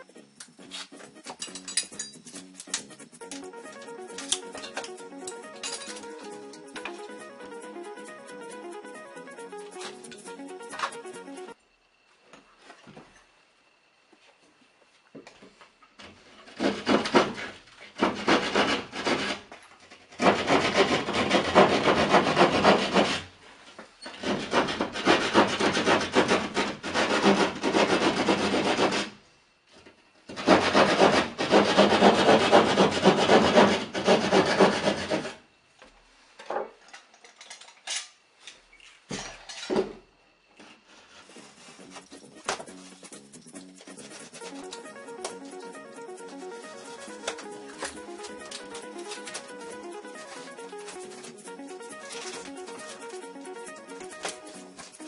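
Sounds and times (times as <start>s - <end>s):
hand saw cutting drywall: 16.3s - 23.4s, 24.1s - 29.2s, 30.3s - 35.4s.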